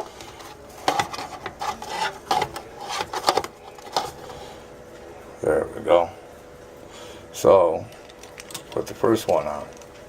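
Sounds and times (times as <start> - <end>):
light being handled and moved: 0.0 - 4.4.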